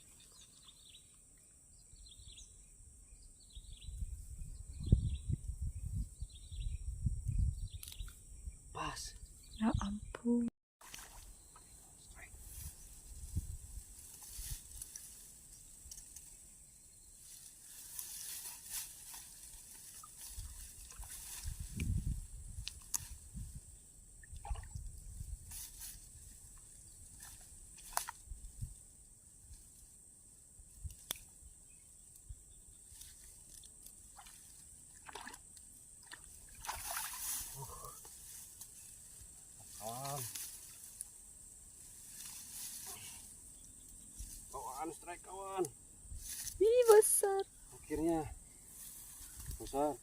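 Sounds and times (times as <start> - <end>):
water splashing and sloshing: 10.8 - 11.4, 17.7 - 21.8, 24.2 - 25.0, 34.0 - 37.6
steady high-pitched hiss: 11.0 - 24.2, 25.0 - 50.0
high-pitched hiss: 36.8 - 43.4.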